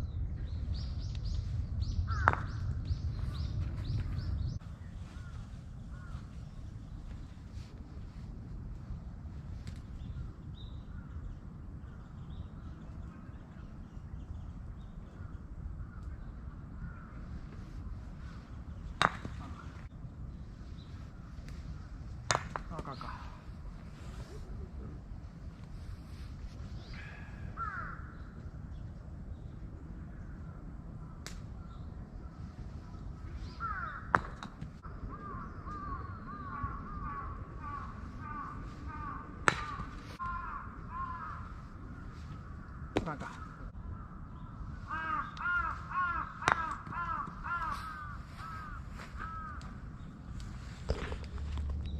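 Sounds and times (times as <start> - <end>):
birds calling: 0.0 - 7.3, 9.8 - 24.6, 26.1 - 51.9
steady low rumble: 0.0 - 51.9
crows cawing: 2.1 - 2.6, 5.1 - 6.3, 26.9 - 28.2, 33.5 - 34.5, 35.1 - 49.8.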